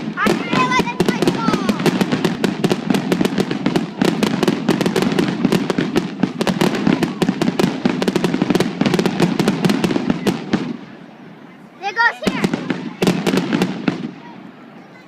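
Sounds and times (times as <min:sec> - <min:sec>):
fireworks crackling: 0:00.0 - 0:15.0.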